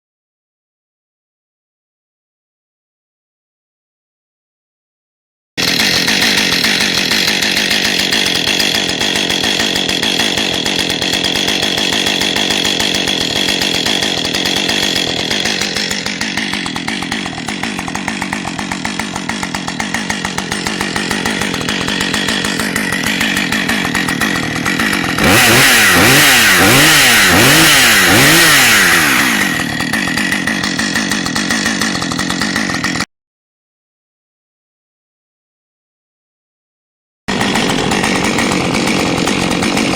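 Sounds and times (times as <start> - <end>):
chainsaw engine idling: 5.6 - 33.1, 37.3 - 39.9
chainsaw revving high: 5.6 - 33.1, 37.3 - 39.9.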